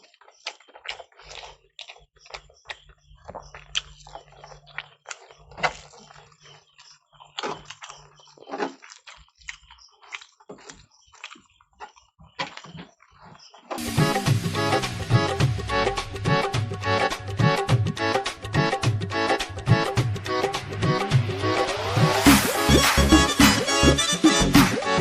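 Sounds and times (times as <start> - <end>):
chewing and eating by hand: 0.0 - 14.1, 16.3 - 20.0.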